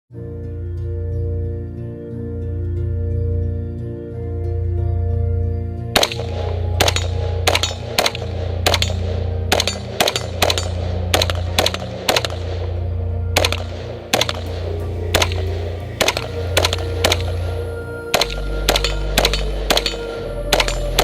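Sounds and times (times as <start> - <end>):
music with heavy bass: 0.2 - 21.0
gunshots hitting steel targets: 6.0 - 12.6.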